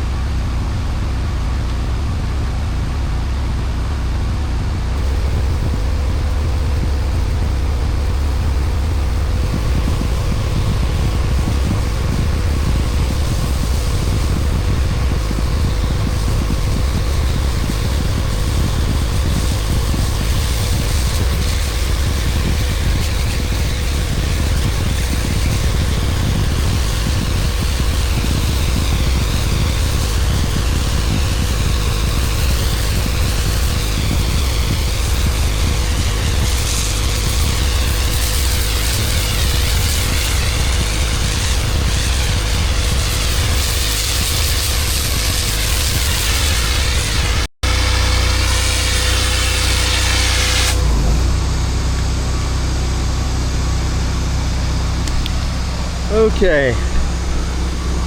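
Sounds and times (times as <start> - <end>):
engine hum: 0.0 - 58.0
water spraying hiss: 5.0 - 50.8.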